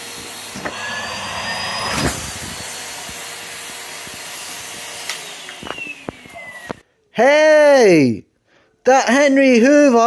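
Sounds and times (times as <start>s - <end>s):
vacuum cleaner running: 0.0s - 6.8s.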